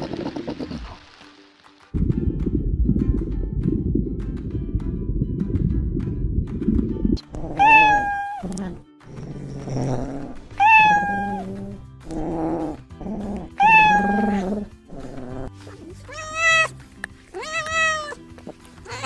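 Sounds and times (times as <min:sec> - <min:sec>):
cat meowing: 0:07.5 - 0:08.6, 0:10.6 - 0:11.6, 0:13.6 - 0:14.5, 0:16.0 - 0:18.2.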